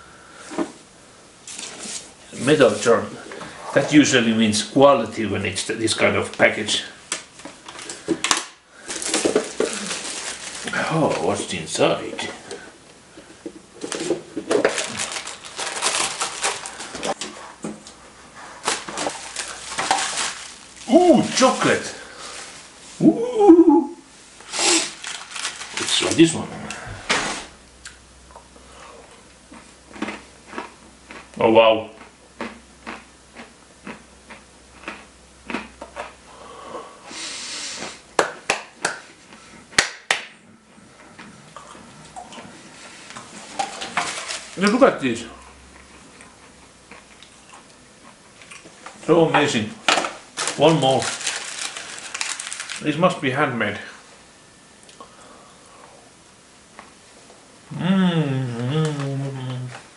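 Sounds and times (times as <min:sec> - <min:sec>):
package rustling: 0:07.1 - 0:11.6, 0:13.5 - 0:18.0, 0:18.6 - 0:22.8, 0:24.7 - 0:26.5, 0:43.2 - 0:44.8, 0:48.6 - 0:53.2
wrapping crinkling: 0:07.1 - 0:11.6, 0:13.8 - 0:17.5, 0:18.6 - 0:23.0, 0:24.4 - 0:26.5, 0:43.2 - 0:45.2, 0:48.5 - 0:53.4.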